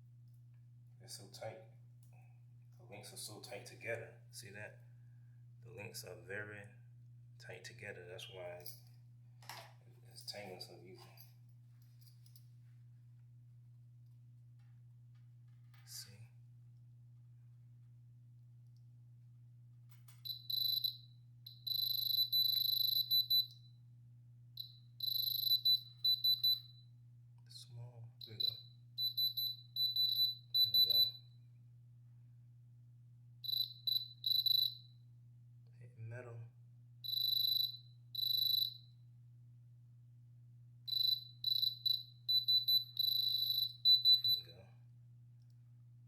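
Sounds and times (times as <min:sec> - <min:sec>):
diamond tester beeping: 0:20.1 - 0:23.8, 0:24.6 - 0:26.9, 0:28.2 - 0:31.4, 0:33.4 - 0:34.9, 0:37.0 - 0:38.9, 0:40.9 - 0:44.6.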